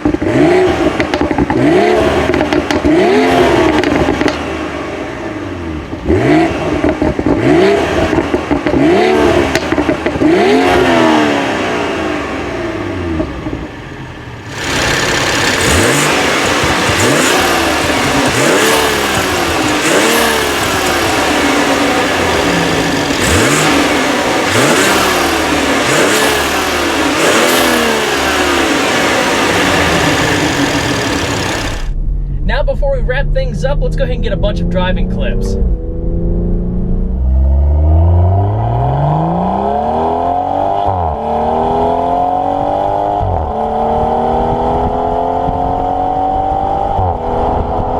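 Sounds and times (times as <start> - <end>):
car engine revving in blips: 0.0 - 32.2, 33.4 - 47.9.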